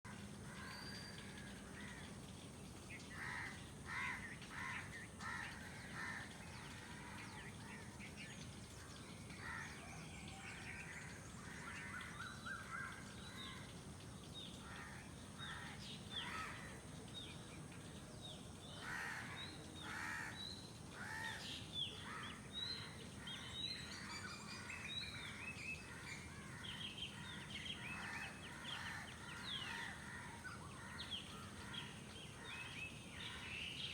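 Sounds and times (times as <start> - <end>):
crows cawing: 18.8 - 20.4.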